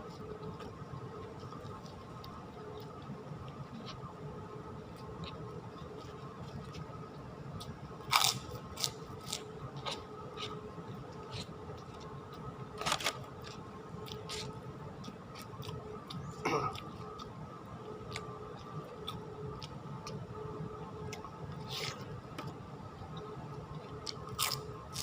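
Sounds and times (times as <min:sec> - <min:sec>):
faint steady hum: 0:00.0 - 0:25.0
chewing with crisp crunches: 0:07.6 - 0:20.3, 0:23.0 - 0:25.0.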